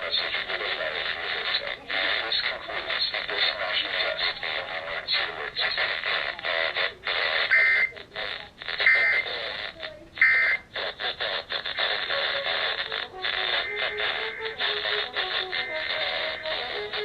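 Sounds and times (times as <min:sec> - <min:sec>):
broadcast audio: 0:00.0 - 0:17.0
buzzy alert data bursts: 0:05.8 - 0:08.2, 0:08.8 - 0:17.0.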